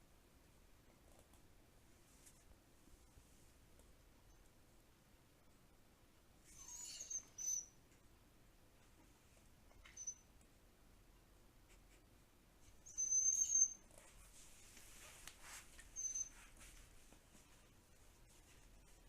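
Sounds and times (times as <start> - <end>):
dog squeaking high-pitched: 6.5 - 7.8, 9.8 - 10.3, 12.9 - 13.9, 16.0 - 16.5.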